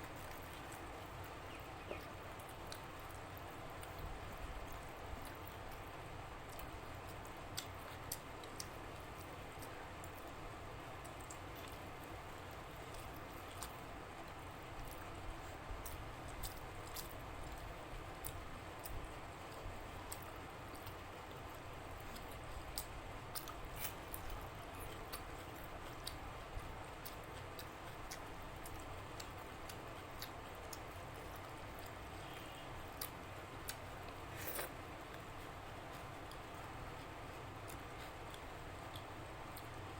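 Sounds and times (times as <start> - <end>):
steady low hiss: 0.0 - 39.9
person chewing: 30.0 - 36.4.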